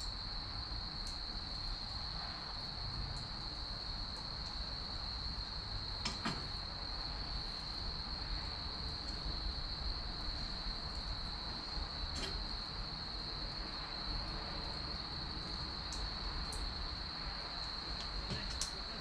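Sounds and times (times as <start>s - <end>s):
wood fire crackling: 0.0s - 19.0s.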